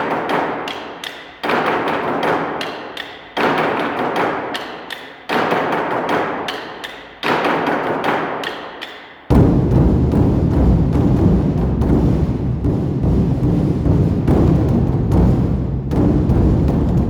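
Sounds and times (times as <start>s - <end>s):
large drum booms: 9.3s - 17.0s.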